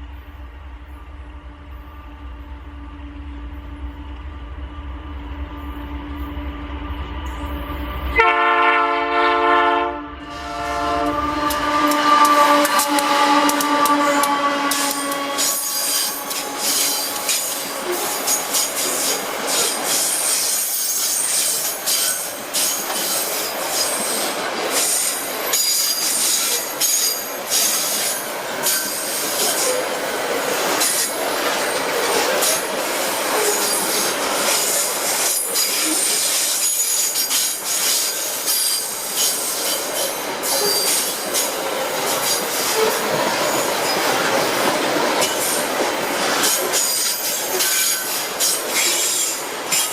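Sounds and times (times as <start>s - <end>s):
train wheels clattering on rails: 10.8s - 49.9s
steel wheels squealing: 11.5s - 49.9s.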